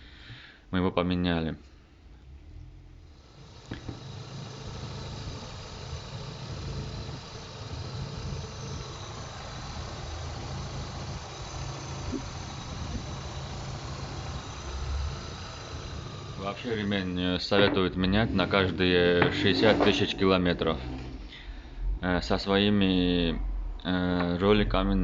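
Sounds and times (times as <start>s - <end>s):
car engine idling: 2.2s - 25.0s.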